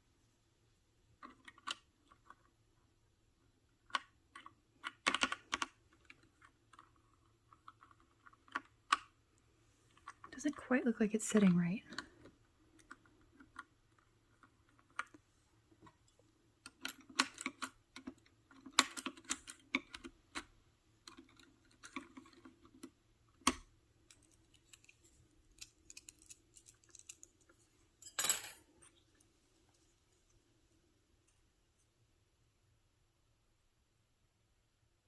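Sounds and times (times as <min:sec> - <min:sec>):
plastic keycaps clicking: 0:03.9 - 0:09.1, 0:21.1 - 0:27.5.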